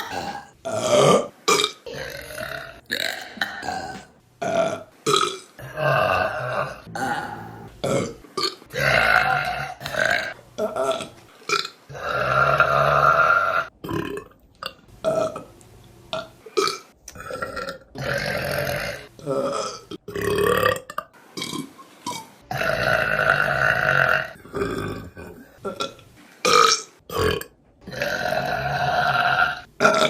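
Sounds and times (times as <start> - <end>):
woman burping: 0.0 - 8.2, 8.8 - 12.1.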